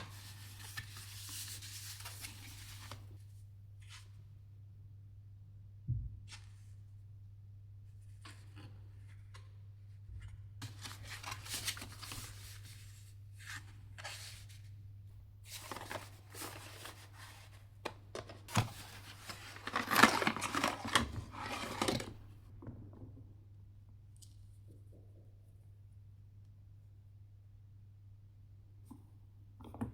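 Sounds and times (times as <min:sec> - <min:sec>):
packaging rustling and crinkling: 0:15.5 - 0:22.3.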